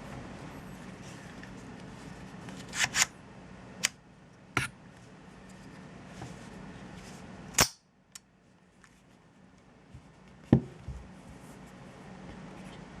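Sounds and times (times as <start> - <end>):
pistol metallic snaps: 7.6 - 8.2.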